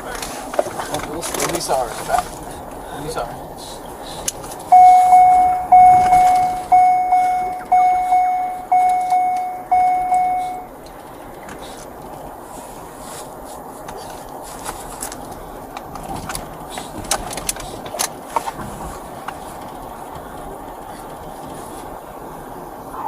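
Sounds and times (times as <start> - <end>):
electronic warning chime: 4.7 - 10.7.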